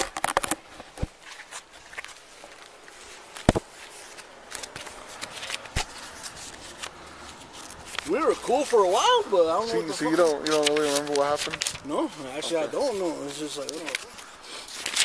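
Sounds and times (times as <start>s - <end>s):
rustling handling noise: 0.0s - 15.0s.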